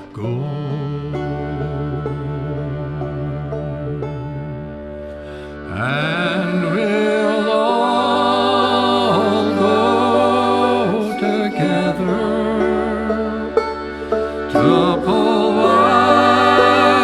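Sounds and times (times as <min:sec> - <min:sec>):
steady music drone: 0:01.6 - 0:17.0
wavering melody line: 0:05.8 - 0:17.0.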